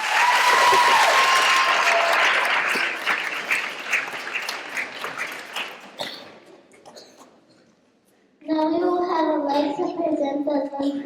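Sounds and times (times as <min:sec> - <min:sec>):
audience applauding: 0:00.0 - 0:06.2.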